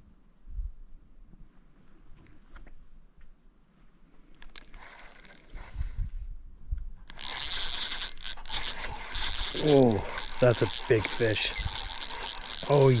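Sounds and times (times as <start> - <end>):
fishing reel drag clicking: 4.4 - 6.2, 7.0 - 13.0.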